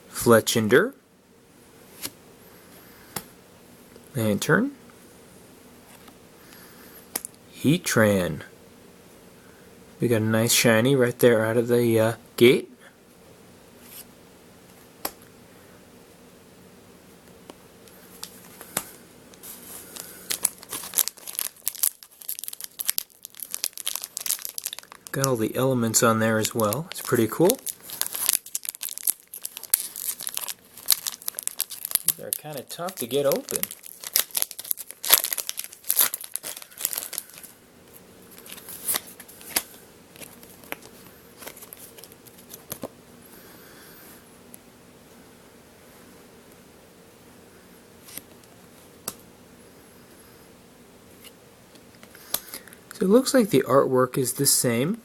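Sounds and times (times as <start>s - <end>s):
trading cards clicking and rustling: 18.2s - 37.5s
foil wrapper crinkling and tearing: 19.5s - 37.6s, 38.3s - 42.9s.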